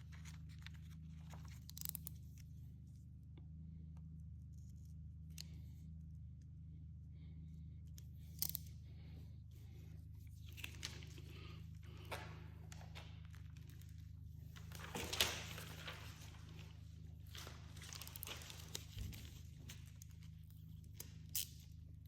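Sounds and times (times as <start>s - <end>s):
film crinkle or scrape: 0.0s - 2.4s, 10.4s - 21.6s
steady low hum: 0.0s - 22.0s
plastic film rustling: 10.4s - 21.2s.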